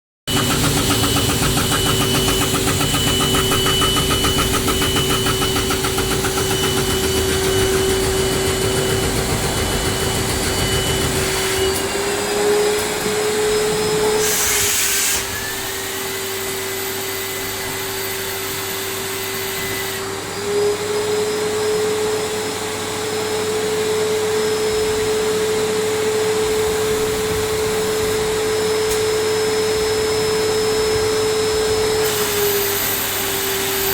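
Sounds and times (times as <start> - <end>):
low machining noise: 0.3 - 20.4
cnc spindle whine: 0.3 - 33.9.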